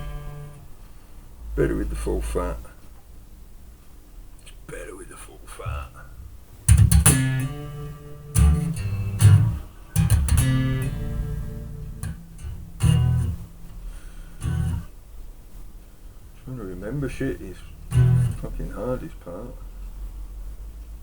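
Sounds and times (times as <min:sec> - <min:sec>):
electric bass guitar notes: 0:00.0 - 0:00.7, 0:06.7 - 0:15.0, 0:17.1 - 0:19.0.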